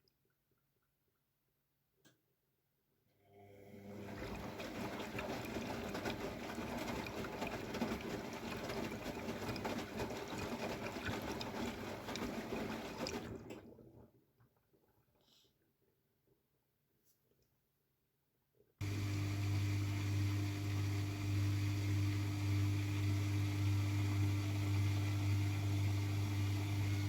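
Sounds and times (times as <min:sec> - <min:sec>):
water running into washing machine: 0:03.4 - 0:14.2, 0:18.8 - 0:27.0.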